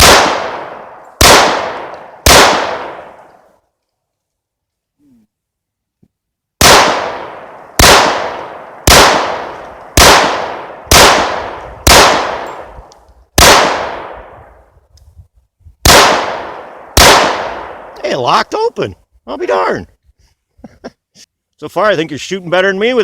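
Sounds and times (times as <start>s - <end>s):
gunshots echoing: 0.0s - 3.4s, 6.6s - 14.5s, 15.8s - 18.0s.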